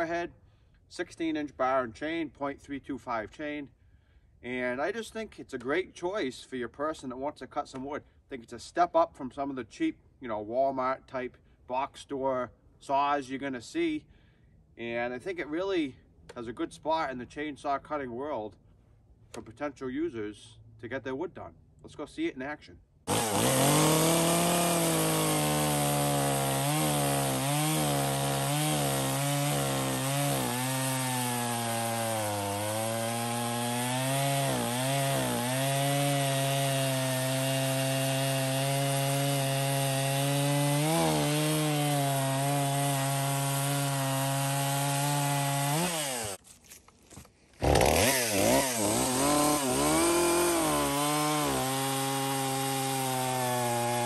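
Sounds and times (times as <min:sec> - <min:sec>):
chainsaw cutting wood: 0:23.1 - 0:54.0.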